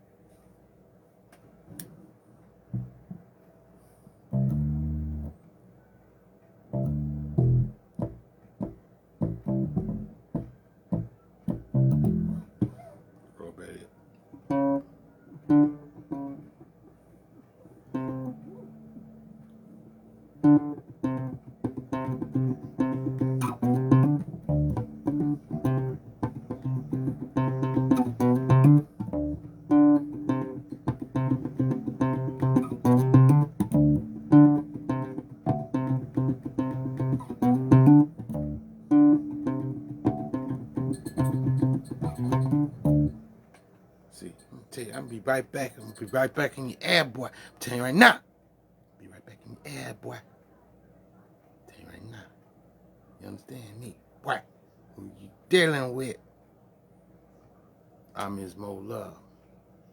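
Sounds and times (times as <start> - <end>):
bass guitar plucked notes: 2.8 - 3.1, 4.3 - 5.4, 6.7 - 12.7, 14.4 - 16.6, 17.9 - 43.3.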